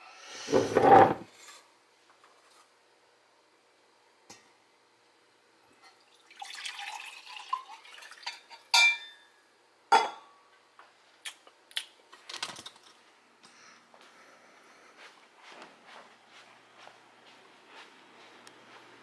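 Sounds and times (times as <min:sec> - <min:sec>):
hard objects clattering: 0:00.5 - 0:01.3.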